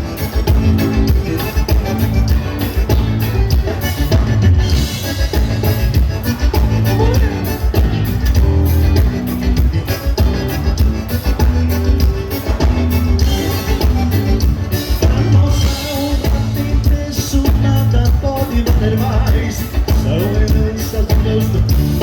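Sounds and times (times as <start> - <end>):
live band playing dance music: 0.0 - 22.0.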